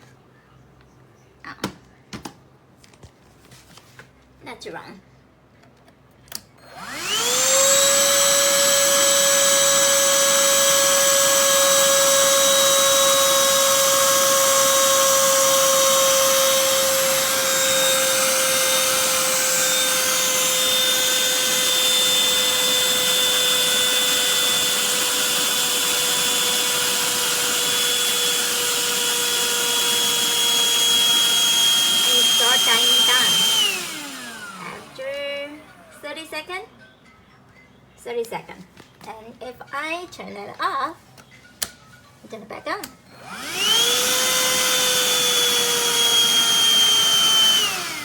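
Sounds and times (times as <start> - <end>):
handheld vacuum motor whine: 6.6 - 36.0, 43.1 - 48.0.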